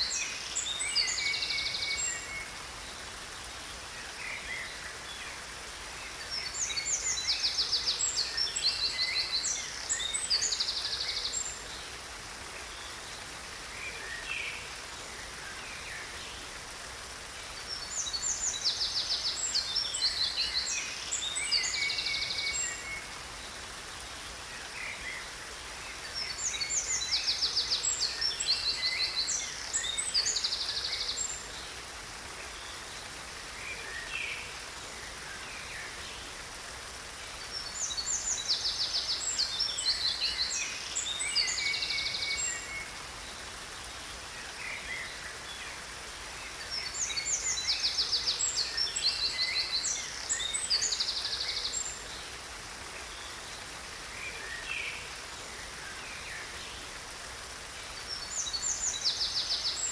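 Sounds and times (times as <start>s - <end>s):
songbird trills and chirps: 0.0s - 5.4s, 6.0s - 12.0s, 17.6s - 31.8s, 37.4s - 56.9s
waterfall rushing: 0.0s - 59.9s.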